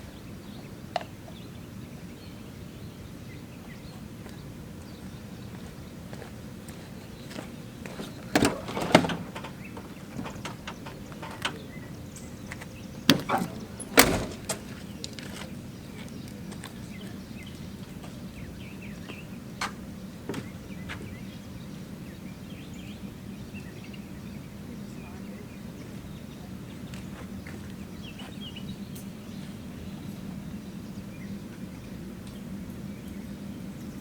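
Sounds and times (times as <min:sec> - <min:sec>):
sharp knocks and clunks: 0:08.0 - 0:14.8.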